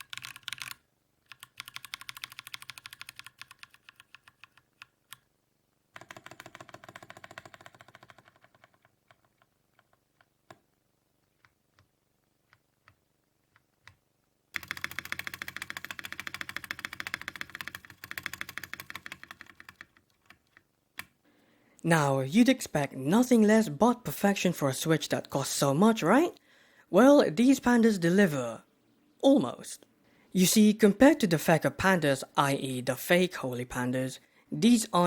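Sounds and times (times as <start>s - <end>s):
mechanical keyboard typing: 0.0s - 5.3s, 5.9s - 21.2s.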